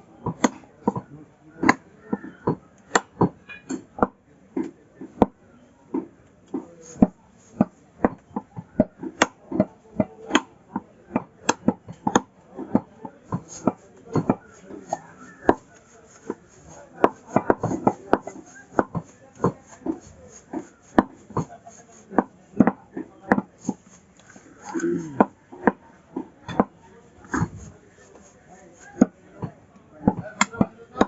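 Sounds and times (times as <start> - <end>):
knife chopping meat on block: 7.0 - 10.5, 11.1 - 23.8.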